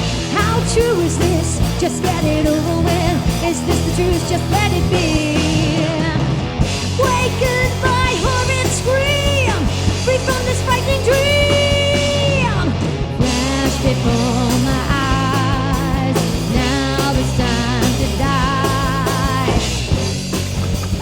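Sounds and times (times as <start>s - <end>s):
bending lead guitar notes: 0.0s - 21.0s
heavy metal band playing: 0.0s - 21.0s.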